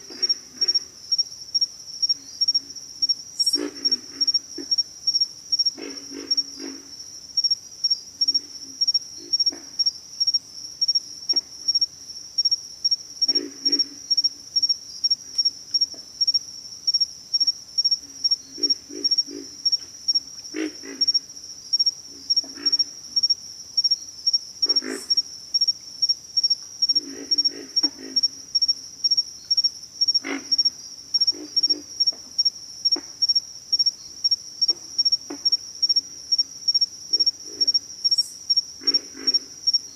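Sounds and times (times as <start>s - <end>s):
frogs grunting: 0.0s - 1.2s, 2.0s - 7.1s, 8.2s - 10.0s, 13.2s - 14.8s, 17.9s - 23.4s, 24.3s - 25.6s, 26.4s - 33.9s, 34.6s - 39.9s
high-pitched insect trill: 0.1s - 39.9s.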